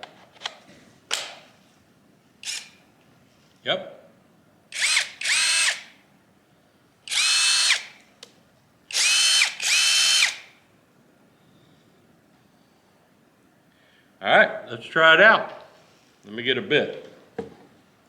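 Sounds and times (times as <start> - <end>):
cordless drill motor whine: 2.4 - 2.8, 4.8 - 5.9, 7.1 - 8.0, 8.9 - 10.5.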